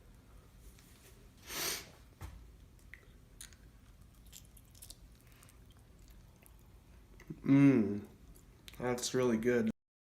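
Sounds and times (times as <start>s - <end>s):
person chewing candy: 2.7s - 7.4s.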